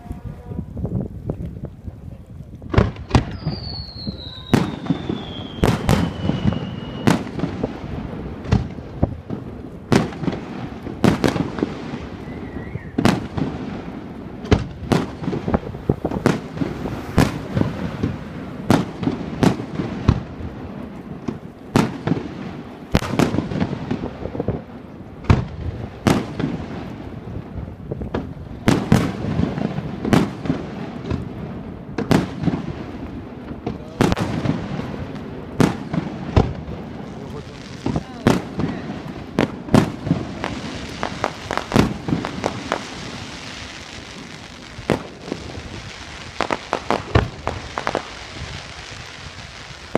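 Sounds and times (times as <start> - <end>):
fireworks crackling: 0.0 - 49.9
firework shells bursting: 33.5 - 49.9.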